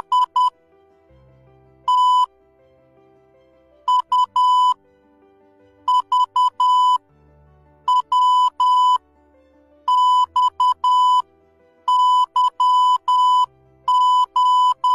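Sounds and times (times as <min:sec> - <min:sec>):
morse code beeps: 0:00.0 - 0:00.5, 0:01.9 - 0:02.3, 0:03.9 - 0:04.8, 0:05.9 - 0:07.0, 0:07.9 - 0:09.0, 0:09.9 - 0:11.2, 0:11.9 - 0:14.9
faint background music: 0:00.0 - 0:14.9.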